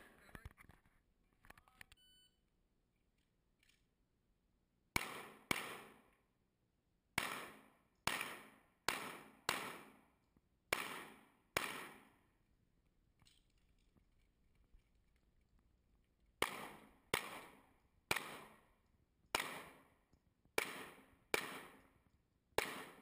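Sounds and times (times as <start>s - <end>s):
pistol shots with echo: 5.0s - 6.1s, 7.2s - 10.1s, 10.7s - 12.2s, 16.4s - 18.7s, 19.3s - 19.9s, 20.6s - 21.9s, 22.6s - 23.0s.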